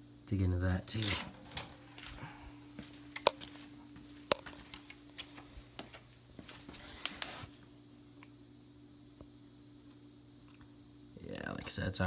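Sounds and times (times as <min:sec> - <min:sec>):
steady low hum: 0:00.0 - 0:12.0
brief rustle: 0:06.4 - 0:07.6.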